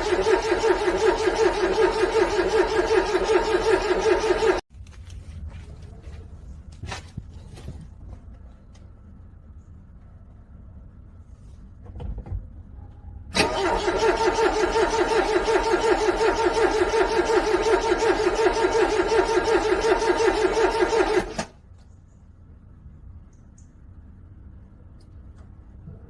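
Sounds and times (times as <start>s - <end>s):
car starter motor cranking engine: 0.0s - 4.6s, 13.3s - 21.6s.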